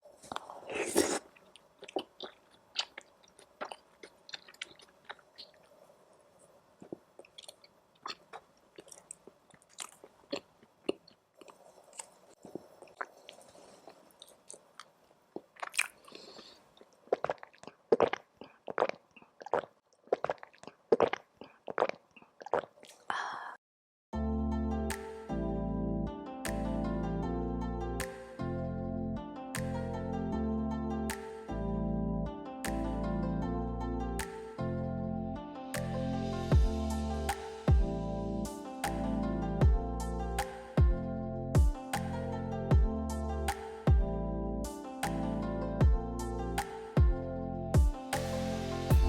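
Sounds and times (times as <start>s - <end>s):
food being bitten and chewed: 0.1s - 23.1s
crunches and clicks of eating: 0.2s - 5.8s, 6.4s - 23.1s
music: 24.2s - 49.0s.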